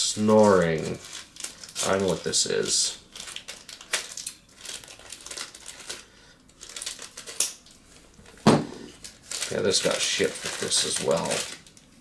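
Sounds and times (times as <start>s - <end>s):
packaging crinkling and rustling: 0.0s - 12.0s
loud knock: 8.5s - 8.9s.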